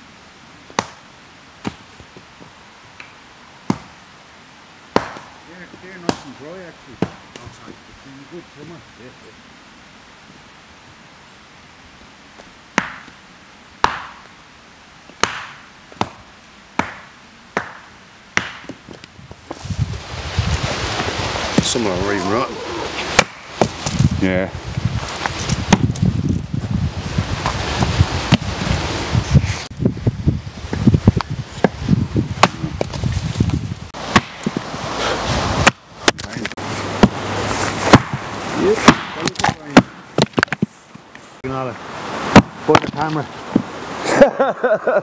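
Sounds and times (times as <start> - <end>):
axe chopping firewood: 0.7 - 1.0, 3.6 - 3.9, 4.9 - 5.3, 6.0 - 6.3, 12.8 - 13.2, 13.8 - 14.3, 15.2 - 16.2, 16.8 - 18.9, 23.1 - 24.0, 25.6 - 26.0, 32.4 - 33.0, 34.0 - 37.2, 37.8 - 40.7, 42.3 - 43.7
firewood cracking: 18.4 - 22.2, 22.9 - 26.6, 30.7 - 41.3.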